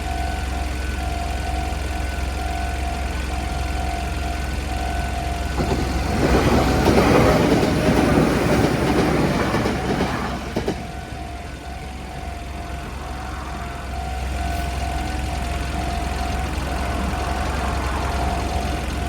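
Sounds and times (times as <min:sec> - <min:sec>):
crossing warning bell ringing: 0:00.0 - 0:19.0
train passing: 0:04.1 - 0:19.0
train wheel clicks: 0:05.5 - 0:11.6.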